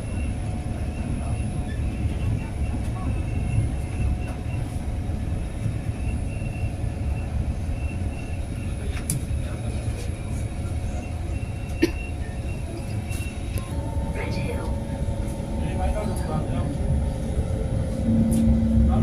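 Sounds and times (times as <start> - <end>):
train rumbling: 0.0 - 19.0
faint steady tones: 10.3 - 19.0.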